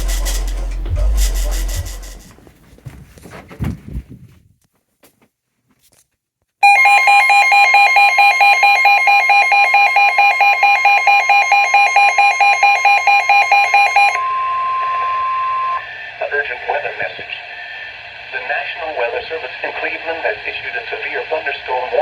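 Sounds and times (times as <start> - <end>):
rapidly pulsing electronic beep: 0.0 - 2.3
steady alarm tone: 0.0 - 2.3, 6.6 - 16.1.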